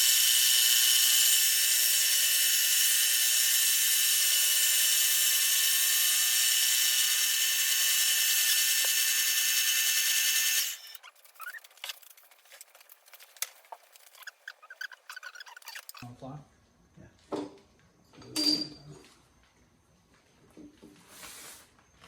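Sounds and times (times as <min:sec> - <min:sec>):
milling cutter whining in metal: 0:00.0 - 0:11.0.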